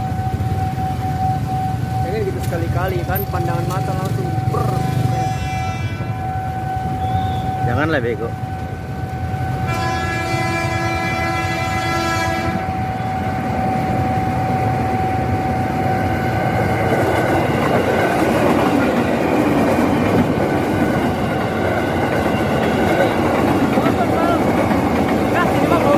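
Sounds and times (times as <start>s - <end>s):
rail rumble and wheel clatter: 0.0s - 25.9s
train horn: 4.8s - 7.8s, 8.6s - 13.5s.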